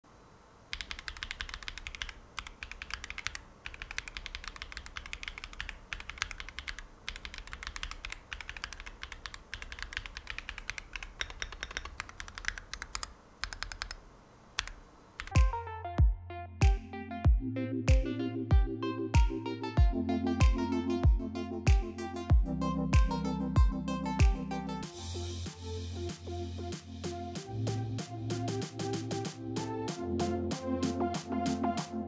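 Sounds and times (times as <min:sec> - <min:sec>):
fast keyboard typing: 0:00.7 - 0:14.0, 0:14.6 - 0:15.6
electronic music with heavy bass: 0:15.3 - 0:32.0.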